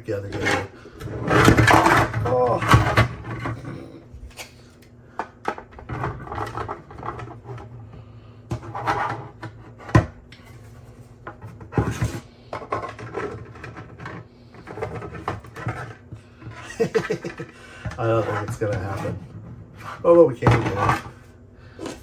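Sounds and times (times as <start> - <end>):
plastic scraping rubs: 10.5 - 21.2.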